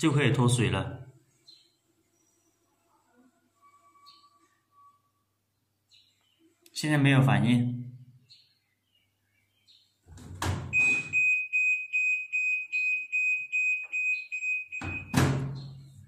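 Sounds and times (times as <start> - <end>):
washing machine beeping: 10.6 - 16.0.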